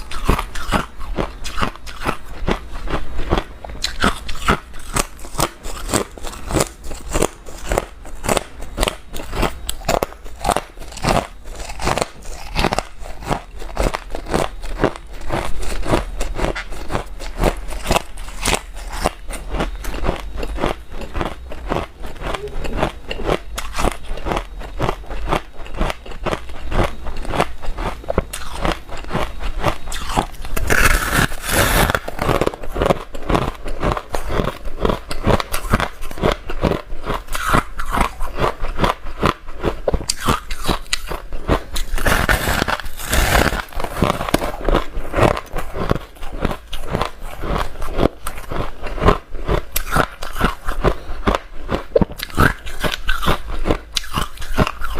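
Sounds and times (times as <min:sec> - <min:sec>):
person crunching ice: 0:00.0 - 0:54.9.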